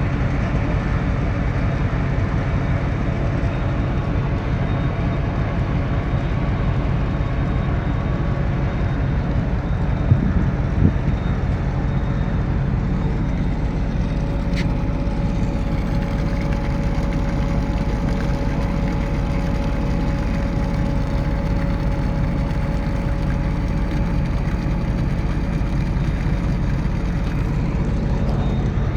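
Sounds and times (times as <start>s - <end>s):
low engine rumble: 1.4s - 28.9s
faint steady tones: 7.4s - 28.9s.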